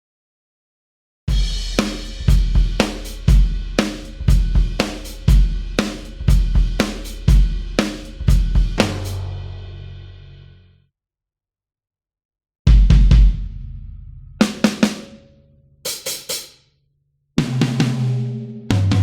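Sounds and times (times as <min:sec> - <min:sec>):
rock drum groove: 0:01.3 - 0:10.4, 0:12.7 - 0:15.2, 0:15.9 - 0:16.6, 0:17.4 - 0:19.0.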